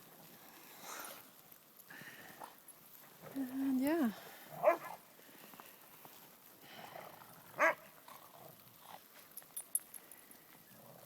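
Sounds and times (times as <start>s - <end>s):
dog barking: 4.6s - 5.0s, 7.6s - 7.8s
faint high jingling clicks: 9.1s - 10.9s.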